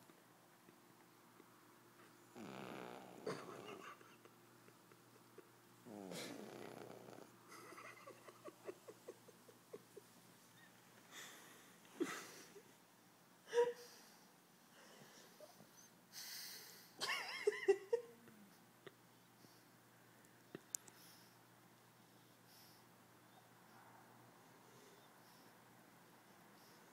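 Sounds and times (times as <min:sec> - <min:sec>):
puppy snoring and wheezing: 0:05.8 - 0:07.4
puppy snorting: 0:05.9 - 0:07.3.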